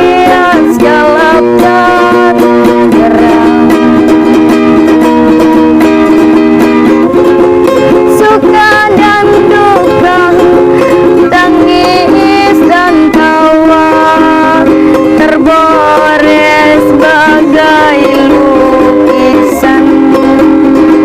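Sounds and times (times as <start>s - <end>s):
plucked strings: 0.0s - 21.0s
girl singing a slow ballad: 8.1s - 20.4s.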